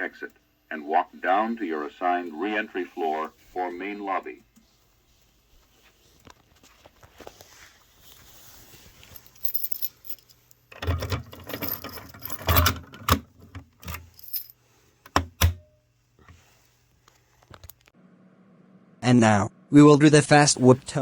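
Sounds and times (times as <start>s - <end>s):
jangling rattling handling noise: 8.9s - 14.6s.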